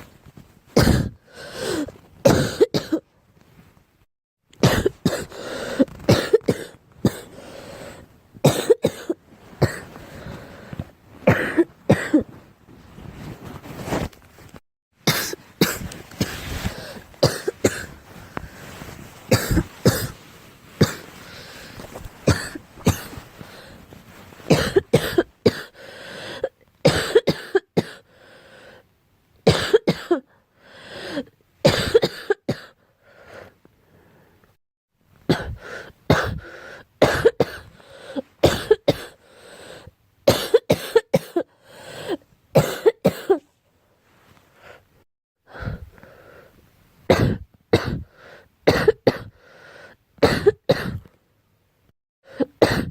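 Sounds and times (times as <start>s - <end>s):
girl coughing: 0.8s - 3.0s, 4.6s - 5.4s, 6.1s - 7.3s, 8.4s - 9.9s, 11.3s - 12.3s, 15.1s - 16.4s, 17.2s - 17.9s, 19.3s - 20.2s, 20.8s - 21.1s, 22.2s - 23.2s, 24.5s - 25.8s, 26.9s - 28.0s, 29.5s - 30.2s, 31.7s - 32.8s, 35.3s - 36.4s, 37.0s - 37.7s, 38.4s - 39.2s, 40.3s - 43.4s, 47.1s - 48.1s, 48.7s - 49.3s, 50.2s - 51.1s, 52.4s - 52.9s.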